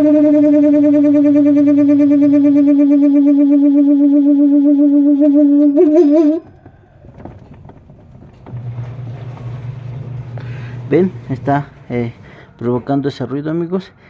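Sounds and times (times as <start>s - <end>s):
spin dryer squealing: 8.3s - 12.2s.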